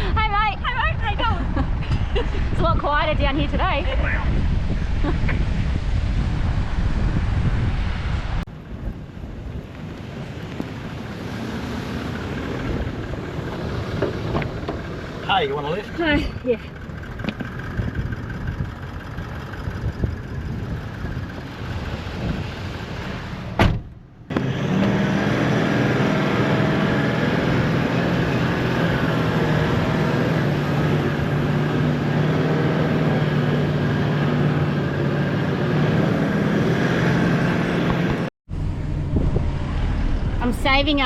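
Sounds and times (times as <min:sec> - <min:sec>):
car engine running: 0:10.4 - 0:35.7.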